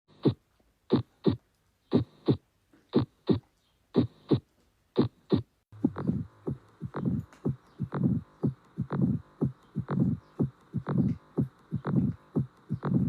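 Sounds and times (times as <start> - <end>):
heartbeat through stethoscope: 0.1 - 2.4, 3.0 - 4.4, 5.0 - 13.0
whooshing heart murmur: 5.0 - 13.0.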